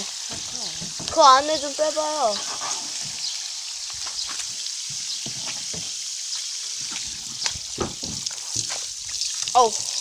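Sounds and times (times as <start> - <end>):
garden hose spraying water: 0.0 - 10.0
water splashing: 6.7 - 10.0.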